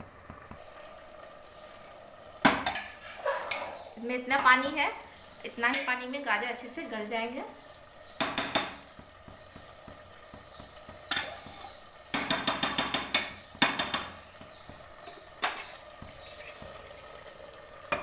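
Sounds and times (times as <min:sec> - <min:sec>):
food sizzling: 0:00.0 - 0:18.0
metal spoon scraping a pot: 0:02.6 - 0:03.8.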